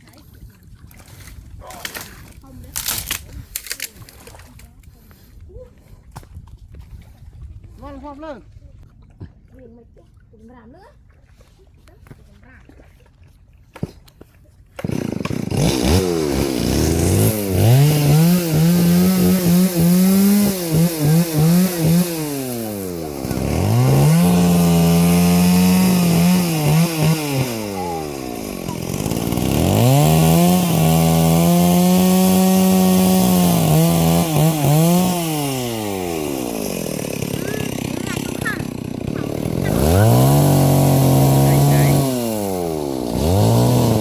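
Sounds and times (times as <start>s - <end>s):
small petrol engine revving: 14.8s - 44.0s.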